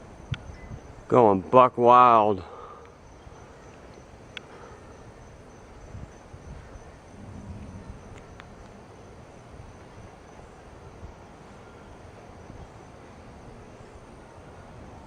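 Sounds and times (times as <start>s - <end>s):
night insects trilling: 0.0s - 15.0s
faint clicks: 3.7s - 4.6s
soft low rumble: 7.0s - 10.3s.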